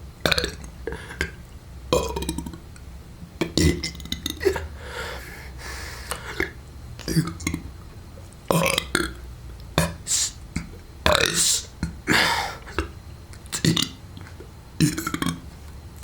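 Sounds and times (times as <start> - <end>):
person burping syllables: 0.2 - 2.6, 3.4 - 4.8, 6.2 - 7.7, 8.5 - 9.2, 9.8 - 15.4.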